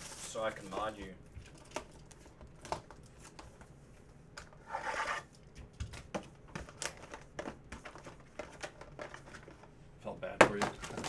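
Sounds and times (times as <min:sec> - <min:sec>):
cards tapping and rustling: 0:00.6 - 0:03.7, 0:05.6 - 0:09.7, 0:10.4 - 0:11.0.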